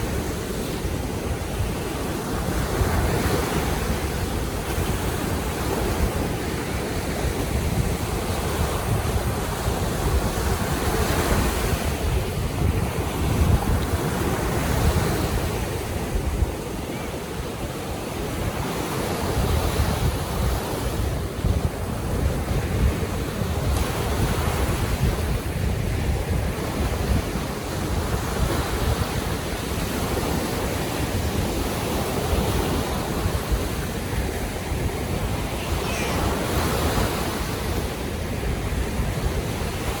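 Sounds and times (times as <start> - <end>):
sea waves washing in: 0.0 - 40.0
wind rumbling on microphone: 0.0 - 40.0.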